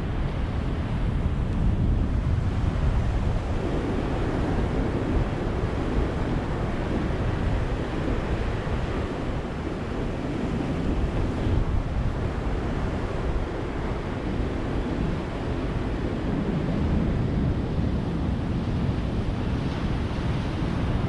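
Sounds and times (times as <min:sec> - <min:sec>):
ocean waves breaking on beach: 0:00.0 - 0:21.0.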